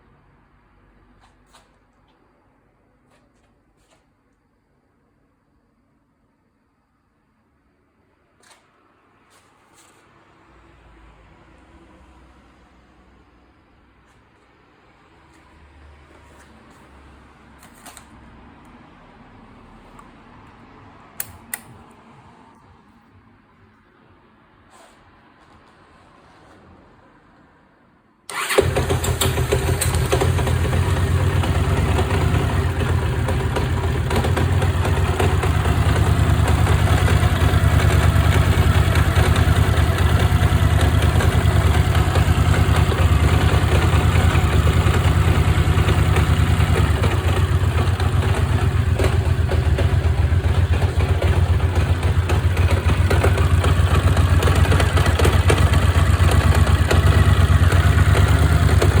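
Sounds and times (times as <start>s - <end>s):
abnormal engine noise: 28.3s - 59.0s
motorcycle engine idling: 28.3s - 59.0s.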